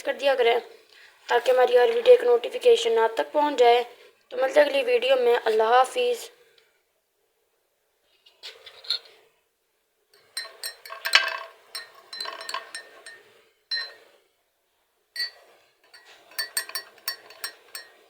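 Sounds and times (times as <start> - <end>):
spoon clinking against glass cup: 10.2 - 14.0, 15.2 - 18.0.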